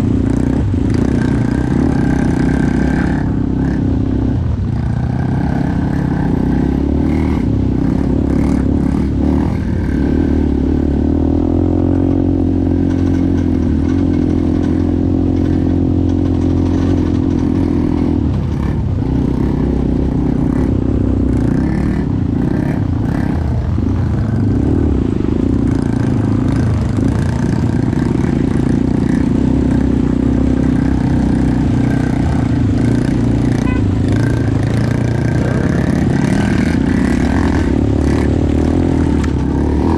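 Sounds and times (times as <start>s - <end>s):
atv engine revving: 0.0s - 39.9s
machine clatter and knocks: 12.8s - 18.7s.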